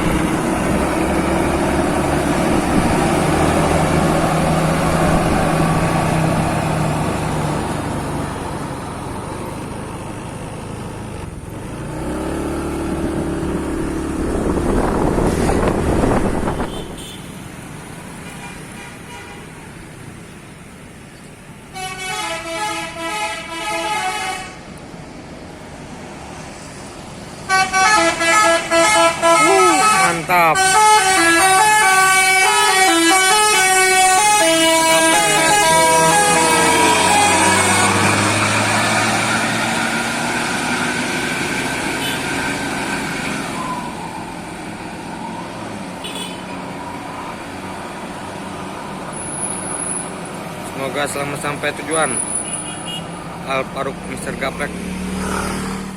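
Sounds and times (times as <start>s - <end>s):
bus engine pulling away: 0.0s - 16.6s, 24.6s - 55.9s
road noise: 0.0s - 55.9s
traffic noise: 0.0s - 55.9s
bus horn playing a tune: 16.4s - 17.3s, 18.3s - 19.6s, 21.7s - 24.7s, 27.5s - 39.2s, 41.9s - 42.3s, 46.0s - 46.6s, 52.4s - 53.1s.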